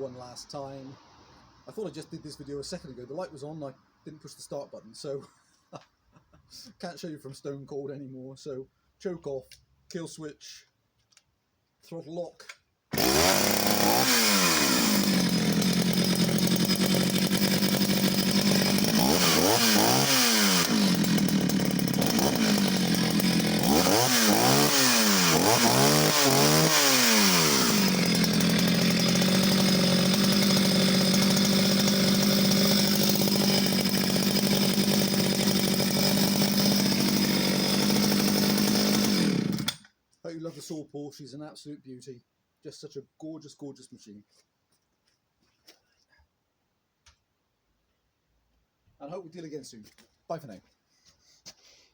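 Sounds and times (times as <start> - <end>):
chainsaw revving and idling: 12.9 - 39.9.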